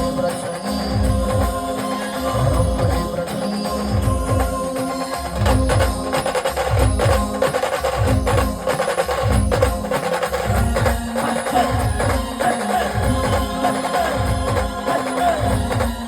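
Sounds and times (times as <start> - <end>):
heavy drums beating: 5.3 - 16.0.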